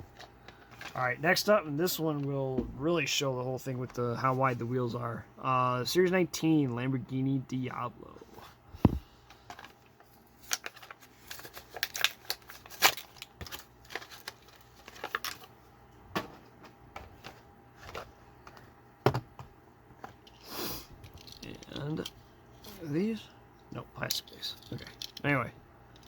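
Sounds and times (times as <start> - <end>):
plastic packaging clicks and crinkles: 9.3 - 15.5.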